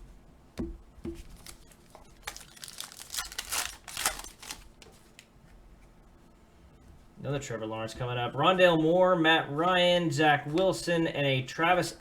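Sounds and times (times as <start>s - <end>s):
foil wrapper crinkling and tearing: 1.3s - 5.3s.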